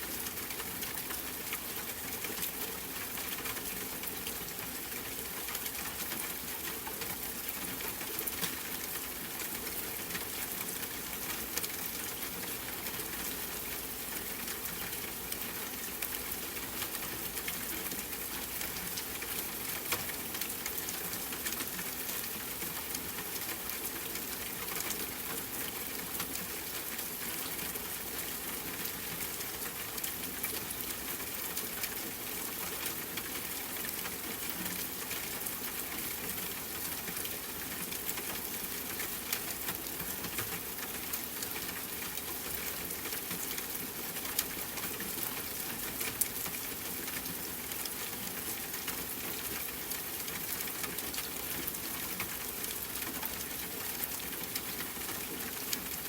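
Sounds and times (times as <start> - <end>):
steady rain patter: 0.0 - 56.0.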